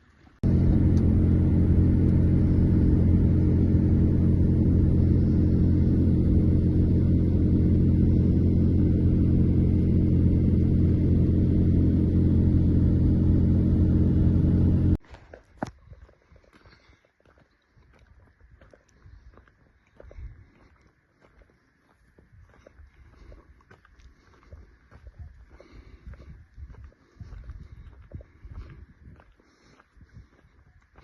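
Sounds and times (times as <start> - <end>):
vehicle engine low drone: 0.0 - 15.0, 18.0 - 31.0.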